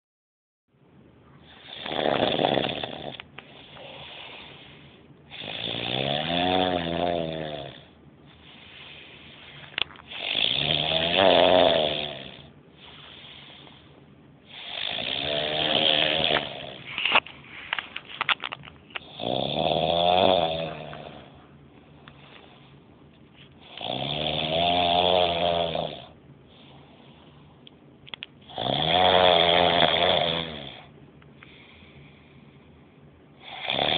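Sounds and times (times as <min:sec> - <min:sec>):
heavy rasping snoring: 0:01.4 - 0:04.7, 0:05.3 - 0:07.9, 0:08.5 - 0:13.6, 0:14.5 - 0:17.1, 0:19.0 - 0:21.4, 0:23.6 - 0:26.2, 0:28.4 - 0:30.9, 0:33.4 - 0:33.9.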